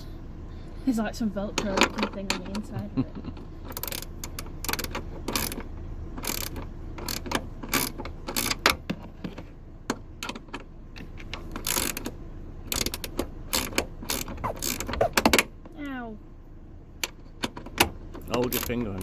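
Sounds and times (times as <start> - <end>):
ratchet spanner clicking: 3.6 - 8.8, 11.2 - 15.5, 17.0 - 18.9.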